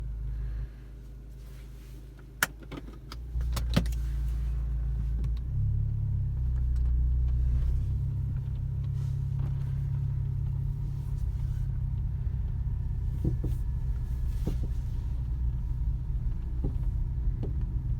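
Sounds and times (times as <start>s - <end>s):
car engine humming: 0.0s - 17.9s
suspension knocks: 12.0s - 17.7s.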